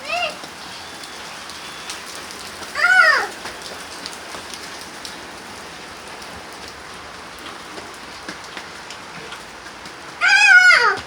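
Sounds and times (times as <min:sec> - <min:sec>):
rain hissing: 0:00.0 - 0:11.0
raindrops pattering: 0:00.0 - 0:11.0.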